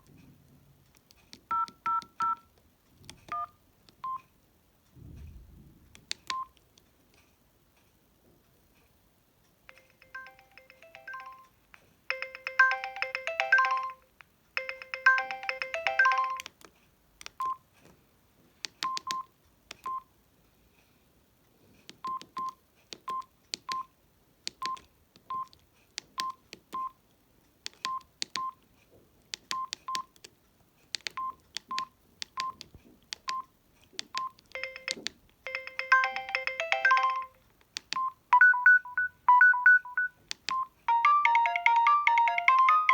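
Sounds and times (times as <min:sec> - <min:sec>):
keypad beeps: 0:01.4 - 0:02.5, 0:03.3 - 0:04.3, 0:06.2 - 0:06.6, 0:09.7 - 0:11.5, 0:12.1 - 0:14.0, 0:14.6 - 0:16.6, 0:17.2 - 0:17.6, 0:18.8 - 0:20.1, 0:22.0 - 0:23.9, 0:24.5 - 0:27.0, 0:27.7 - 0:28.6, 0:29.4 - 0:30.2, 0:31.0 - 0:42.9
electronic beeping melody: 0:09.7 - 0:11.4, 0:12.1 - 0:14.0, 0:40.9 - 0:42.9
key clicks: 0:18.6 - 0:20.0, 0:21.9 - 0:26.9, 0:29.3 - 0:30.3, 0:30.9 - 0:38.1, 0:40.0 - 0:40.6.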